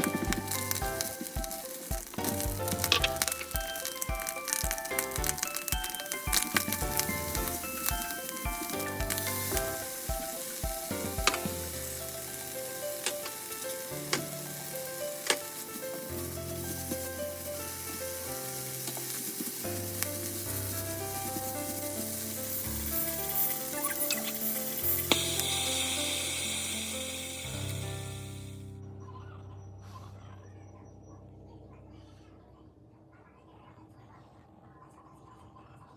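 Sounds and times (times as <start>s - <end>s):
food sizzling in frying pan: 0.0s - 28.7s
background music: 0.0s - 30.6s.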